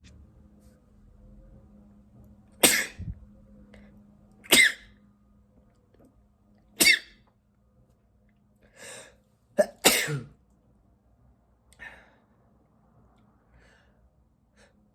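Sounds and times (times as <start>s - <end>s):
person sneezing: 2.6s - 3.1s, 6.8s - 7.2s, 9.6s - 10.3s.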